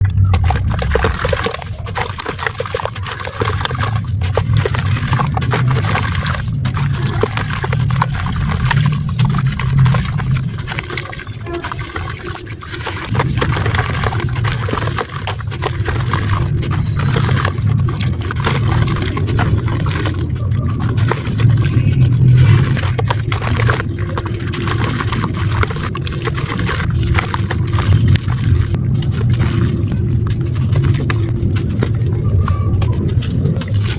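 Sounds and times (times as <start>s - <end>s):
dry clay crunching: 0.0s - 33.9s
wet water sounds: 0.0s - 33.9s.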